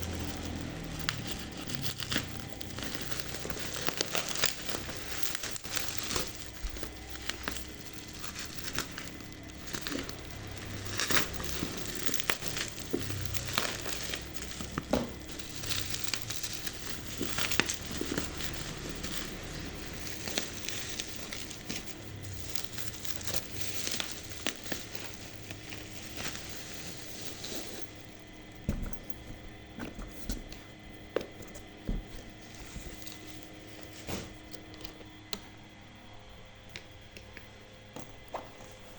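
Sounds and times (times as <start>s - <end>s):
packaging crinkling and rustling: 0.0s - 35.7s.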